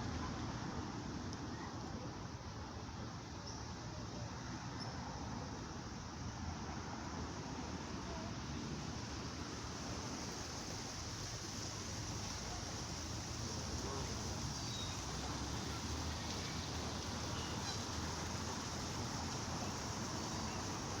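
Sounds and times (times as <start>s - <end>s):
light drizzle: 0.0s - 21.0s
water fountain splashing: 6.6s - 21.0s.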